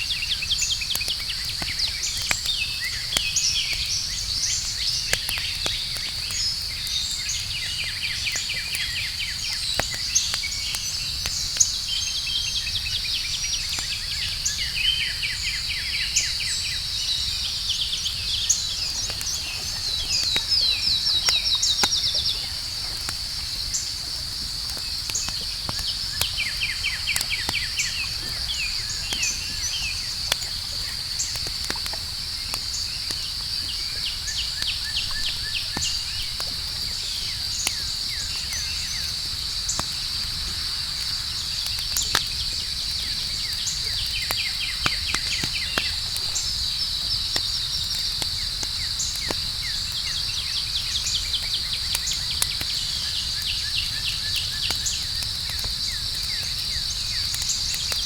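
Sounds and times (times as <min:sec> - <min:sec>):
campfire crackling and popping: 0:00.0 - 0:58.0
night insects chorus: 0:00.0 - 0:58.0
rapid chirping trills: 0:17.0 - 0:24.0.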